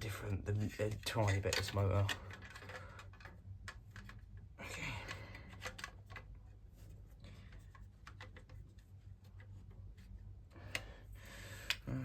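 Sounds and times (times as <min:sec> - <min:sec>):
low steady hum: 0:00.0 - 0:12.0
plastic parts clicking and tapping: 0:00.7 - 0:06.6, 0:07.2 - 0:09.6.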